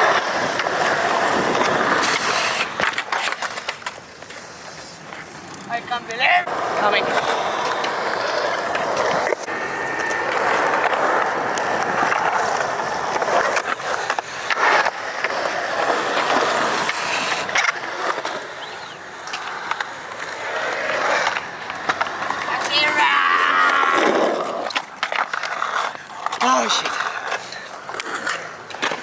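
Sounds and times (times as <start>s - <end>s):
skateboard wheels rolling on concrete: 0.0s - 29.0s
skateboard clacking on surface: 6.0s - 29.0s.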